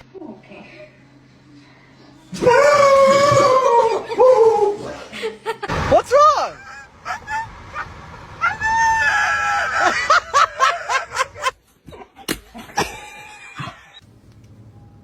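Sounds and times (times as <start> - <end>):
high-pitched scream: 2.4 - 4.8, 7.1 - 10.2.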